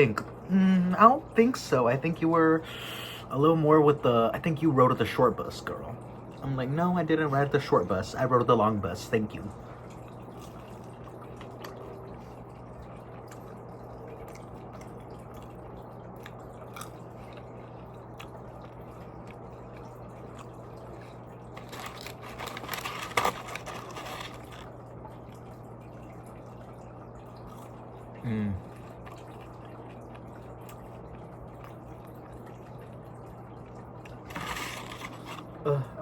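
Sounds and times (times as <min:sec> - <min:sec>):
steady low hum: 0:00.0 - 0:36.0
person chewing and crunching food: 0:09.9 - 0:25.6, 0:27.4 - 0:35.6.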